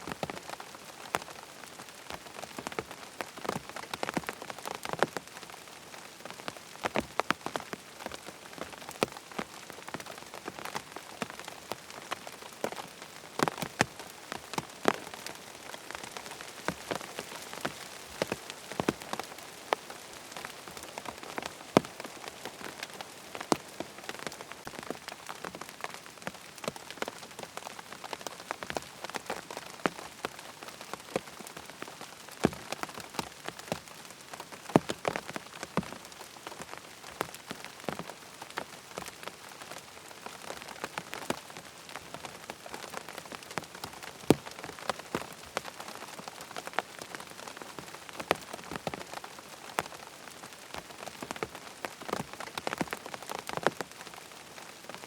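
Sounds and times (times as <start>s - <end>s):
rain hissing on tent fabric: 0.0s - 55.0s
raindrops tapping: 0.1s - 31.8s, 32.4s - 33.9s.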